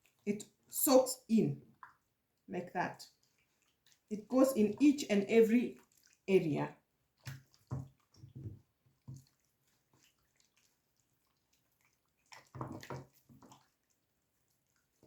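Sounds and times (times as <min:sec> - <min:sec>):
hands squelching wet meat: 0:01.6 - 0:02.2, 0:03.0 - 0:15.0.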